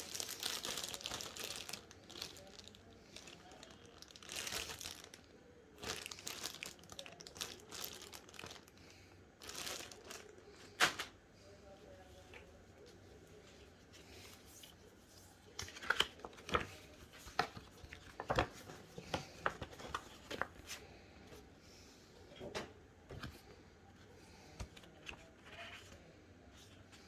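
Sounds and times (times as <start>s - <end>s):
packaging clicks taps and rustles: 0.0s - 8.8s.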